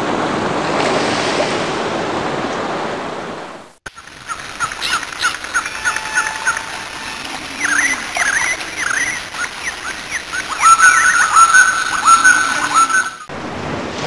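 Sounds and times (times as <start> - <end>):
steady noisy wash: 0.0 - 14.0
high animal cries: 4.8 - 13.3.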